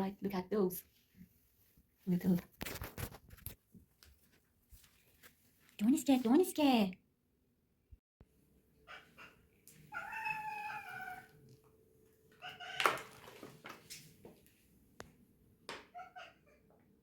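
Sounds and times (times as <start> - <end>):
cat meowing: 8.9 - 11.4.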